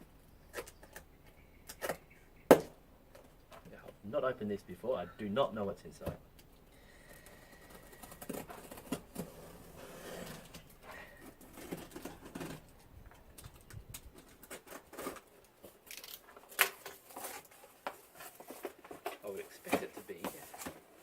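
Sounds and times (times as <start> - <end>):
cardboard box rustling and crinkling: 7.6 - 12.7, 14.2 - 21.0.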